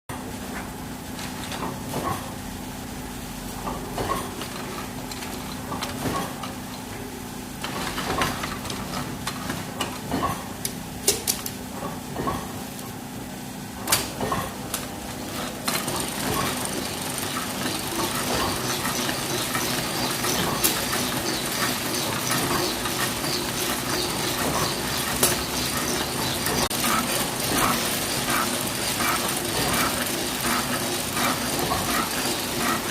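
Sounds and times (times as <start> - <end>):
steady machine hum: 2.4 - 32.9
hissing machine noise: 15.2 - 32.9.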